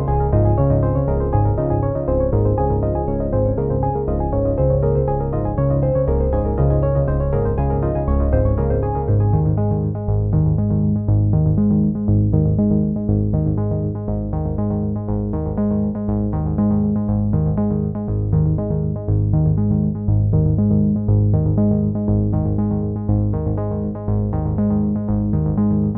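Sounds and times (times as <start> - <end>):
synthesizer music: 0.0 - 10.0.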